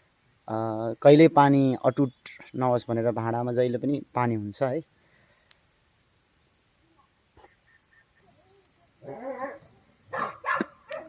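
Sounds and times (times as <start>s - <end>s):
crickets chirring: 0.0s - 11.0s
dog barking: 9.1s - 11.0s.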